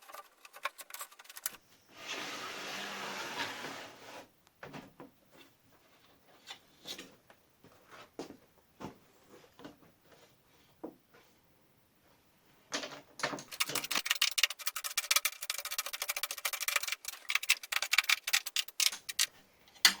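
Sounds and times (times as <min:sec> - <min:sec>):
tools and parts clicking and knocking: 0:00.0 - 0:01.6, 0:12.7 - 0:20.0.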